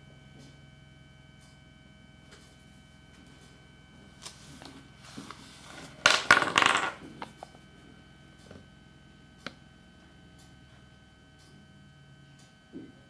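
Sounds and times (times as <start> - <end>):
crinkling handling noise: 4.2 - 7.6.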